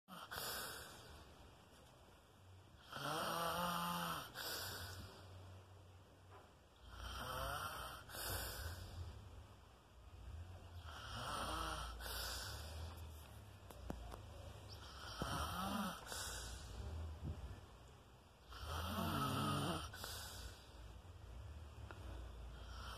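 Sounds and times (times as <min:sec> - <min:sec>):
woman snoring: 0:00.1 - 0:01.1, 0:02.8 - 0:05.2, 0:06.8 - 0:09.2, 0:10.7 - 0:13.0, 0:14.7 - 0:17.1, 0:18.4 - 0:20.8, 0:22.5 - 0:22.9.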